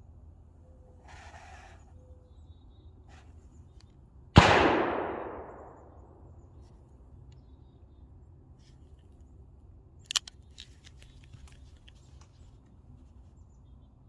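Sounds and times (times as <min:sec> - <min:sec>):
revolver gunshot: 0:04.4 - 0:06.1.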